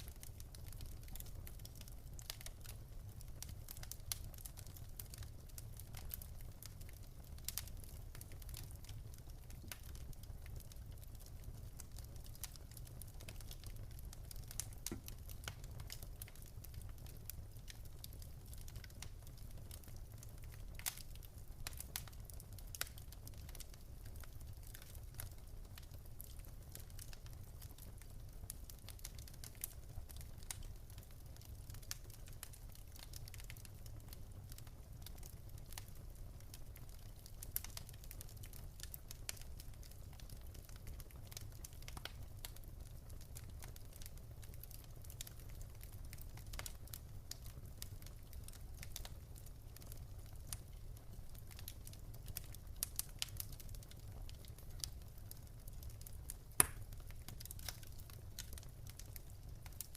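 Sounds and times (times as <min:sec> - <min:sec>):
wood fire crackling: 0:00.0 - 0:59.9.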